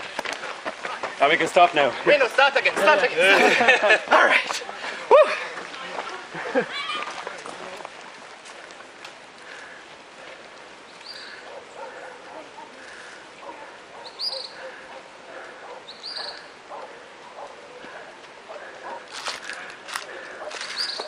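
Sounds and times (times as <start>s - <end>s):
dog barking and yipping: 11.4s - 12.8s, 13.4s - 17.8s, 18.7s - 19.7s.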